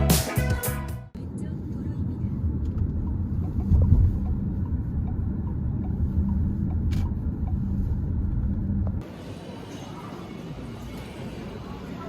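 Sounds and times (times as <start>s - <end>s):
constant low hum: 1.1s - 9.2s
moving vehicle rumble: 1.1s - 9.7s.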